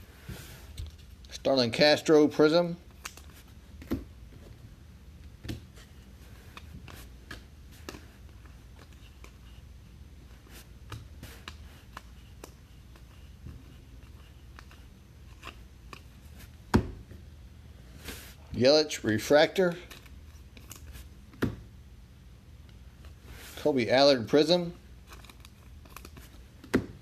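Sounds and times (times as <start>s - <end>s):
low background hum: 0.0s - 27.0s
trading cards clicking and rustling: 19.2s - 21.5s, 25.0s - 27.0s.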